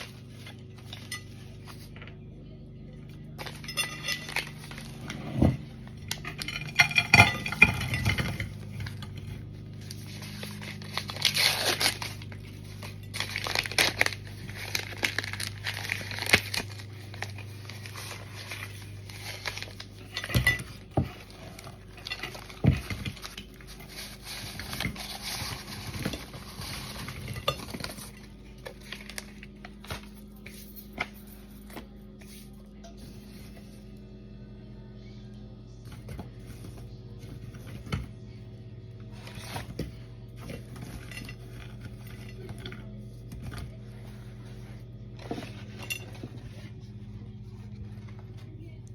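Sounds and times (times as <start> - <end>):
packaging crinkling: 9.8 - 20.1.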